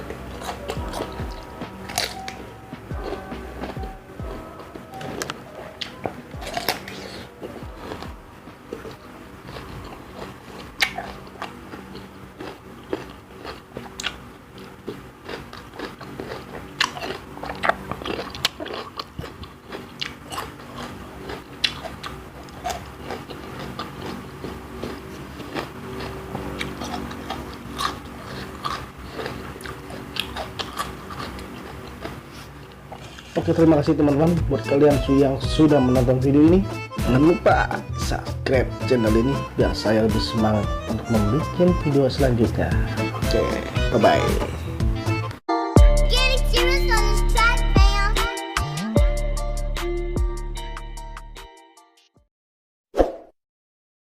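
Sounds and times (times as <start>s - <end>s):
person chewing crunchy food: 0.0s - 33.5s.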